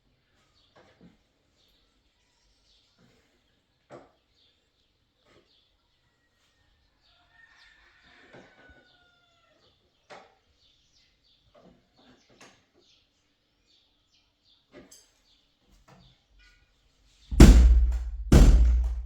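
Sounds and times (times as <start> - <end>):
distant rooster crowing: 6.4 - 9.7
sharp knocks: 17.3 - 19.0.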